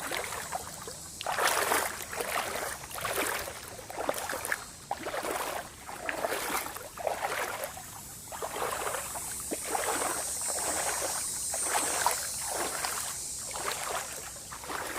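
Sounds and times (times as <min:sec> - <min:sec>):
footsteps splashing in water: 0:00.0 - 0:14.9
steady high hiss: 0:07.9 - 0:14.9.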